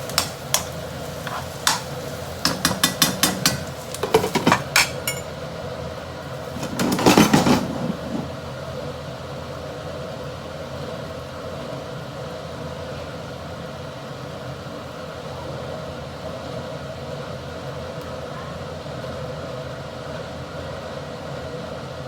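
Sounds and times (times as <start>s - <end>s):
metal spatula scraping a wok: 0.0s - 5.3s, 6.5s - 8.3s
food sizzling: 0.0s - 5.5s
steady mechanical hum: 0.0s - 22.0s.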